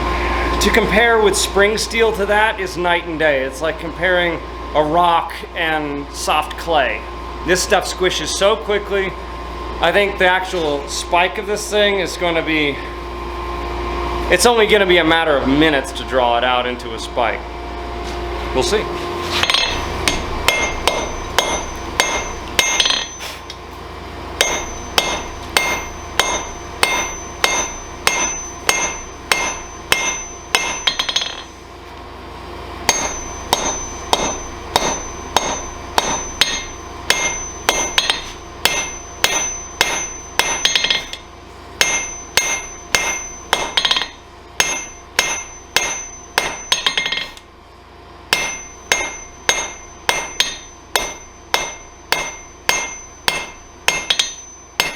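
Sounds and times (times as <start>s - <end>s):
low steady hum: 0.0s - 54.9s
hammer striking metal on anvil: 19.3s - 23.6s, 24.4s - 31.6s, 32.9s - 47.4s, 48.3s - 54.9s.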